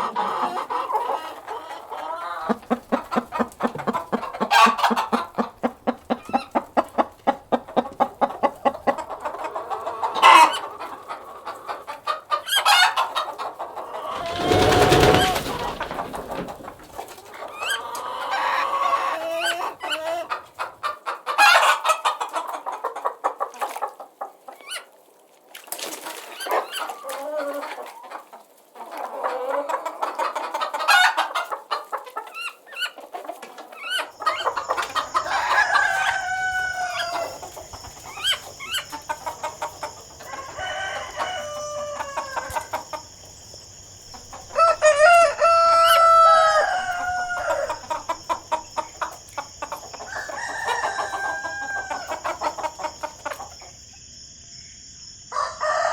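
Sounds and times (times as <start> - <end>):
chickens clucking: 0.0 - 53.9
rooster crowing: 14.0 - 16.5, 34.3 - 38.8, 40.0 - 43.0, 44.4 - 48.2, 50.0 - 53.2, 55.3 - 55.9.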